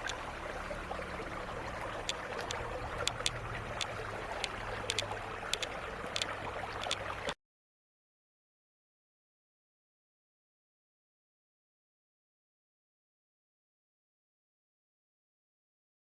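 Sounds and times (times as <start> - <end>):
low hum: 0.0 - 7.3
outdoor rumble and hiss: 0.0 - 7.4
light sharp clicks: 2.0 - 7.1.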